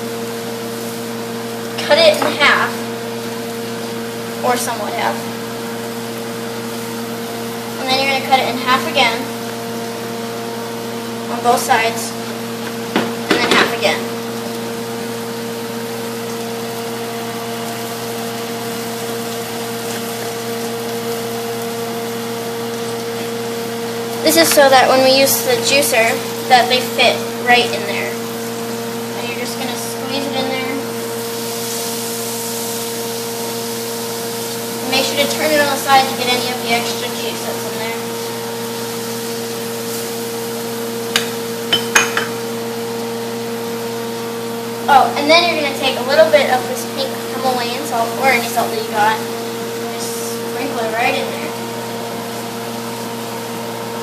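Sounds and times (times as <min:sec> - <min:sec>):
steady machine hum: 0:00.0 - 0:54.0
kitchenware clinking: 0:41.1 - 0:42.4.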